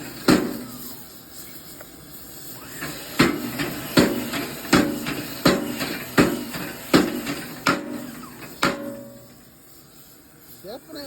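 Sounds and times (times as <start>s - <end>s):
power hammer striking metal: 0.0s - 0.8s, 2.7s - 9.4s.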